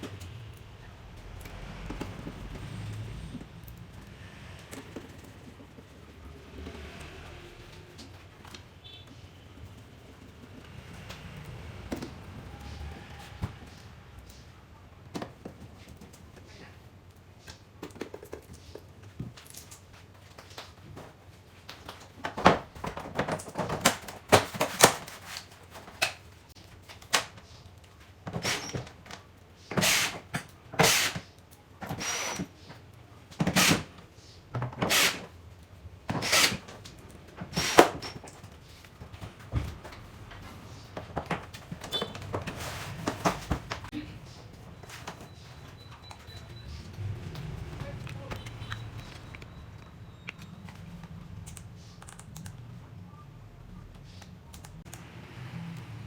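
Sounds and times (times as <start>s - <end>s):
short noisy tool bursts: 30.8s - 31.2s.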